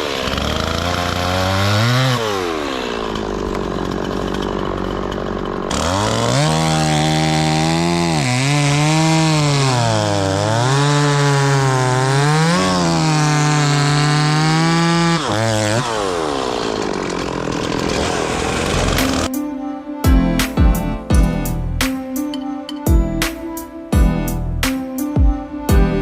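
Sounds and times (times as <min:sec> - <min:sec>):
chainsaw cutting wood: 0:00.0 - 0:19.4.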